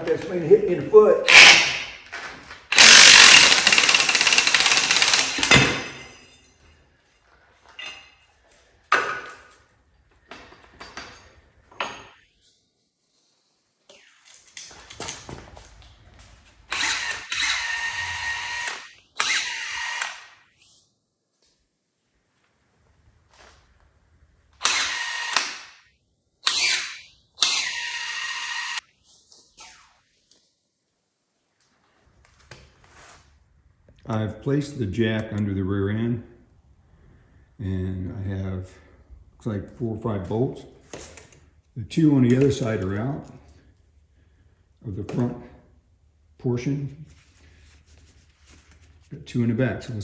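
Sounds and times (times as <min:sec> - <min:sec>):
power wrench running: 0:01.3 - 0:01.8, 0:02.7 - 0:06.0, 0:16.7 - 0:20.4, 0:24.6 - 0:25.8, 0:26.4 - 0:28.8.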